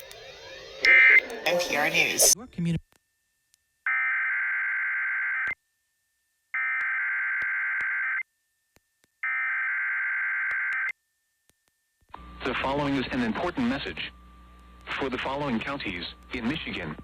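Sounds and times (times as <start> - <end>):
buzzy digital data tones: 0.0 - 2.4
person reading out warning: 0.9 - 2.4.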